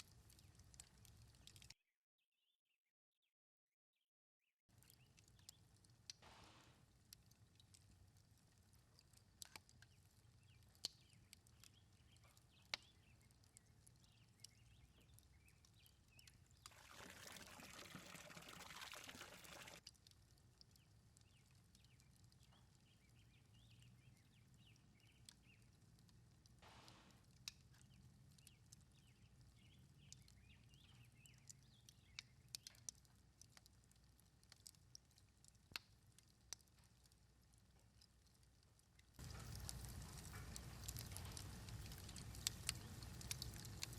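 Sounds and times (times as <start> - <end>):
faint birdsong: 9.7 - 19.8, 20.7 - 25.8, 27.8 - 33.0, 39.2 - 43.9
liquid pouring: 16.6 - 19.9.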